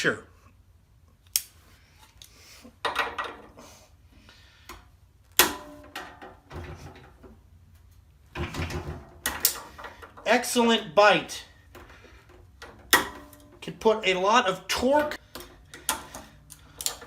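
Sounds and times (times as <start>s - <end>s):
pliers clicking: 1.2s - 1.6s, 15.3s - 17.0s
pliers rattling: 15.0s - 17.0s.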